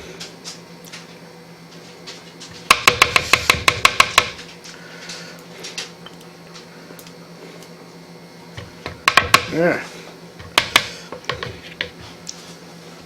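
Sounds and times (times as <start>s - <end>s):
utensil tapping mixing bowl: 8.8s - 9.6s, 10.4s - 12.0s.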